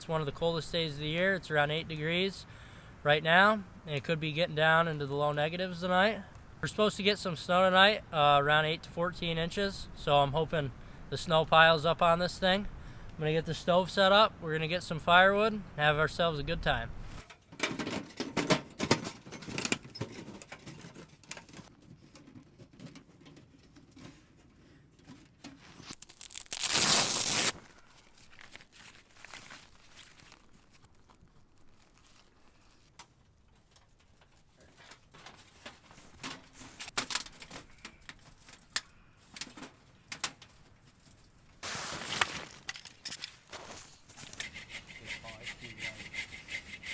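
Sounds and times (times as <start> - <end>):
camping gear rustling and knocking: 17.2 - 26.0, 27.5 - 44.6.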